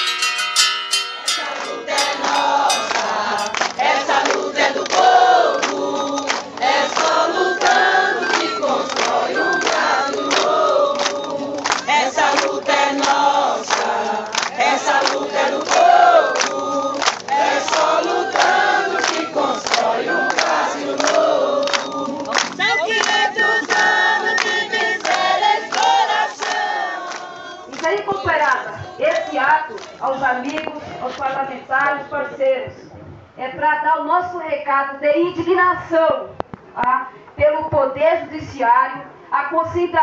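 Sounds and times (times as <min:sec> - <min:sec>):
crowd singing in chorus: 0:01.2 - 0:29.8.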